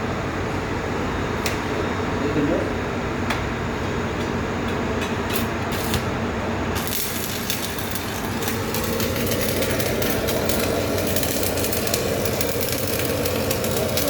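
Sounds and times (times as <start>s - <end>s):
low machine hum: 0.0s - 14.0s
welding arc crackling: 5.1s - 14.0s.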